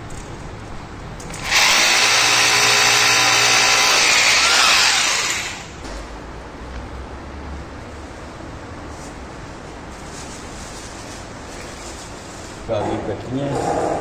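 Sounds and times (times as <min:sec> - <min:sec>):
electric drill boring into wall: 0:01.3 - 0:05.8.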